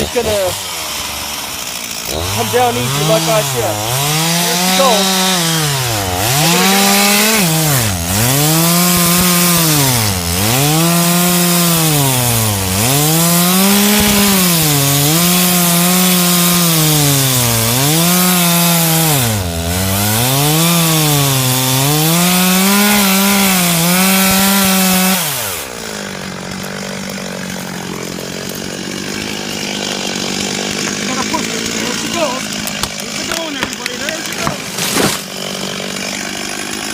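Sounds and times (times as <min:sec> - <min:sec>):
chainsaw cutting tree trunk: 0:00.0 - 0:36.9.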